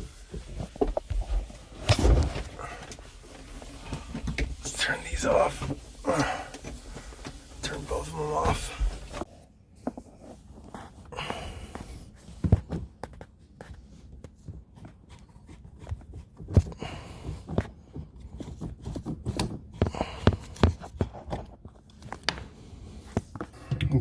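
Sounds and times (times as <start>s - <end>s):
scraping and rustling: 0.0s - 16.6s.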